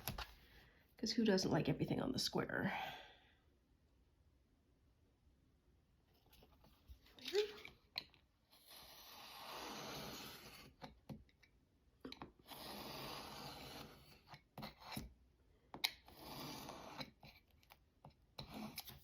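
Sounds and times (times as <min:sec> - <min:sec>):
rasping strokes across paper: 0:08.6 - 0:10.8, 0:12.5 - 0:15.1, 0:16.1 - 0:17.3.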